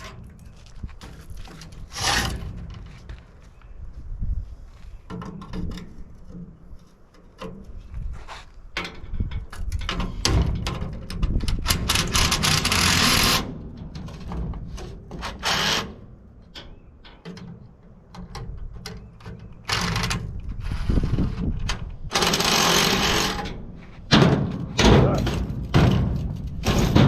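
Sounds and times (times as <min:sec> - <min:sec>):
rasping metal scrape: 0:01.5 - 0:03.0, 0:11.8 - 0:16.1, 0:22.1 - 0:24.1.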